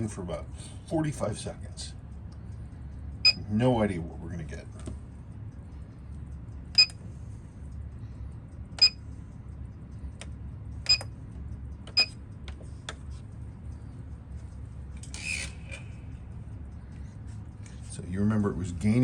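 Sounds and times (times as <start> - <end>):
steady low hum: 0.0 - 19.0
sharp ringing clicks: 6.8 - 7.0, 8.8 - 9.1, 10.8 - 12.2.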